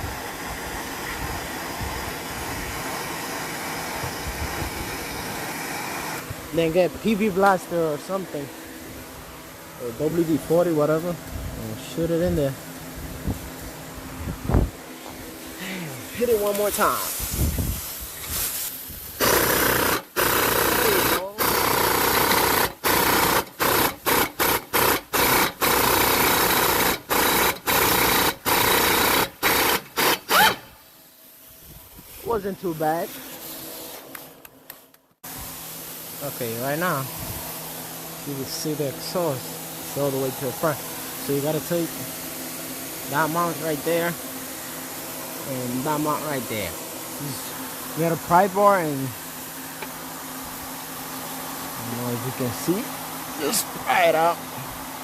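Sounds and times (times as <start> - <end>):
gas torch hissing: 0.0 - 8.4, 15.5 - 30.6
power tool bursts: 19.1 - 30.8.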